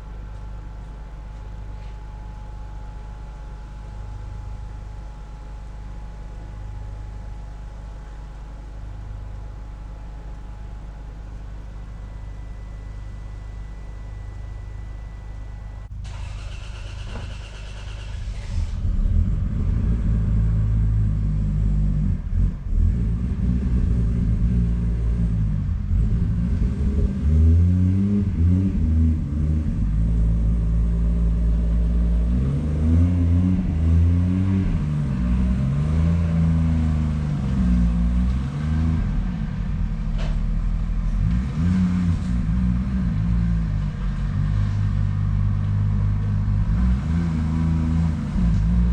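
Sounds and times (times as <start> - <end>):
vehicle engine revving: 16.1 - 48.9.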